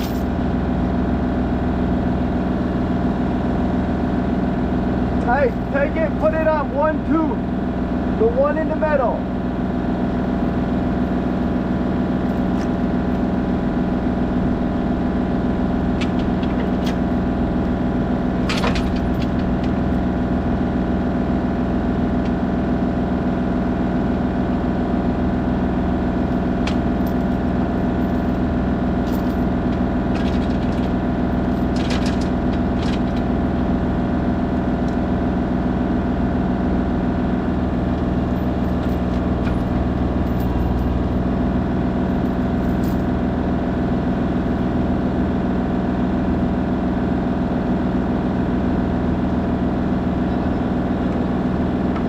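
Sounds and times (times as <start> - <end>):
diesel engine running: 0.0 - 52.0.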